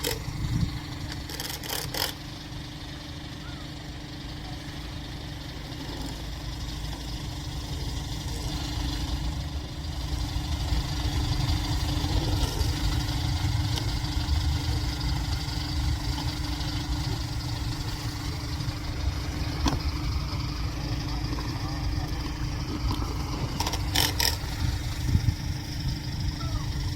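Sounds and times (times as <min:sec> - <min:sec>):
low engine rumble: 0:00.0 - 0:26.9.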